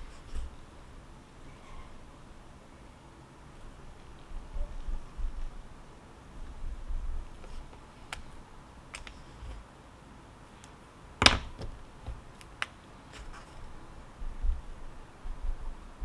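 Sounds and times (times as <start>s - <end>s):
faint low rumble: 0.0s - 9.6s, 13.1s - 16.0s
light sharp clicks and taps: 7.4s - 9.6s.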